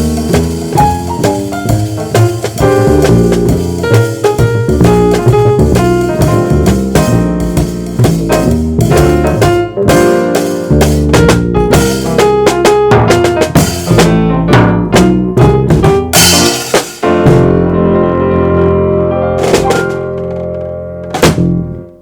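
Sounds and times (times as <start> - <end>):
busy drum kit: 0.0 - 21.8
jazz trio playing: 0.0 - 22.0.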